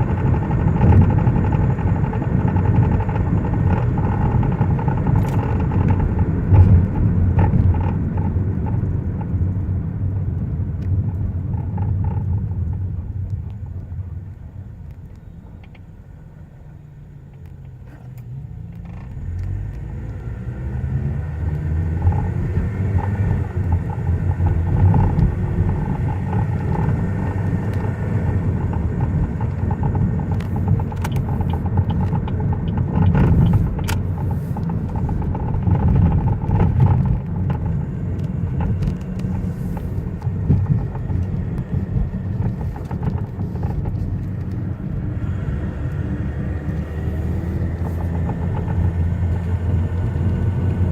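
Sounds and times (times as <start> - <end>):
car engine and road noise: 0.0 - 50.9.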